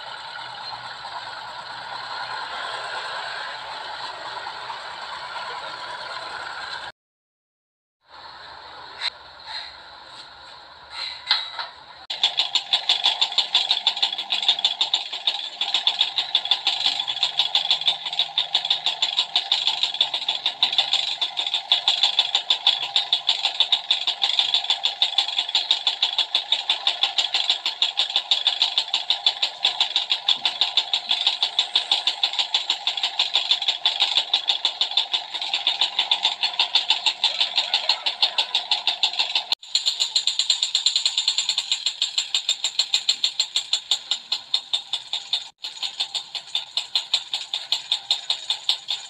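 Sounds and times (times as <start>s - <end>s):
motorcycle engine idling with knocking: 9.0s - 49.0s.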